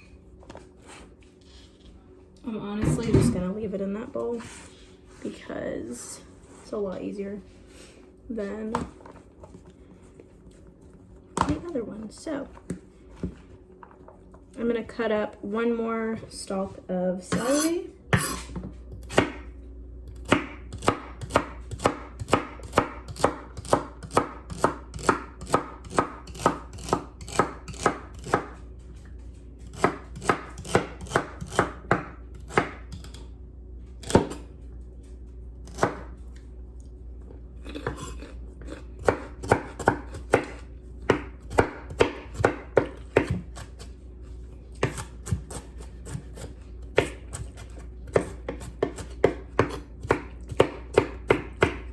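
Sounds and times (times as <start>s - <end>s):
knife chopping celery on board: 20.2s - 28.6s, 29.7s - 33.2s, 34.0s - 34.4s, 37.8s - 43.9s, 44.8s - 51.9s.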